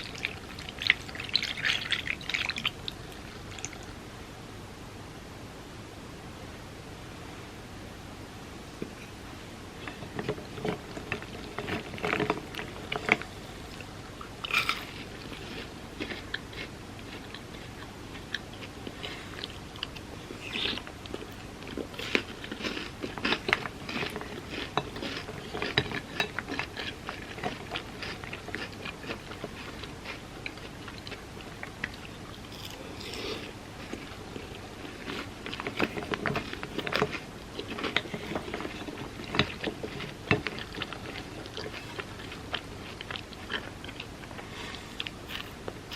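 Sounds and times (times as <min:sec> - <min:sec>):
chewing and crunching wafer: 0:00.0 - 0:04.0, 0:09.8 - 0:45.9.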